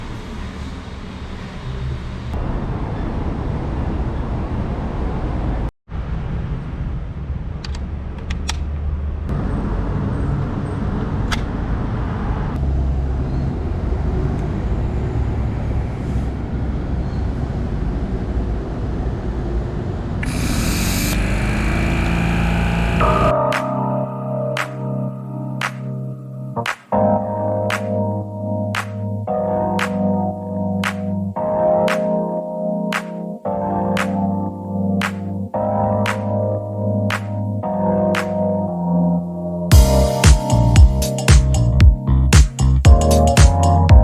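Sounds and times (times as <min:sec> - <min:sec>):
air compressor running: 0:20.2 - 0:23.3
loud air hiss: 0:20.2 - 0:23.3.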